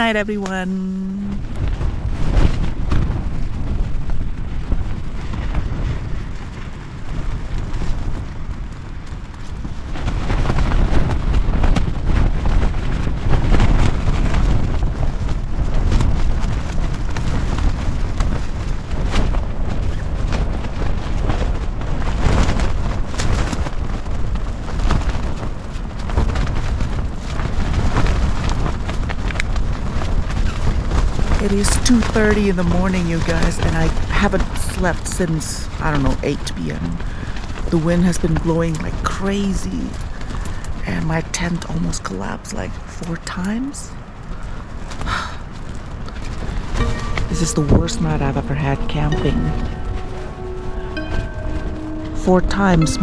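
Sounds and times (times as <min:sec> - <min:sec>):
strong gusting wind on microphone: 0:00.0 - 0:53.0
tent fabric slapping and rattling: 0:07.2 - 0:32.7.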